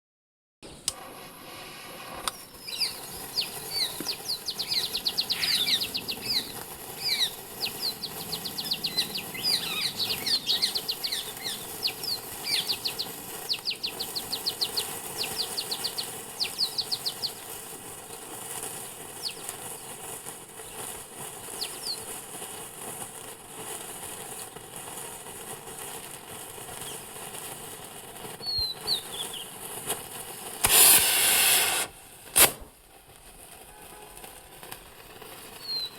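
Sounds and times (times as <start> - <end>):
rocket firework hissing: 0.7 - 35.9
small birds chirping: 2.3 - 22.5, 26.6 - 27.3, 28.4 - 29.6, 35.5 - 35.9.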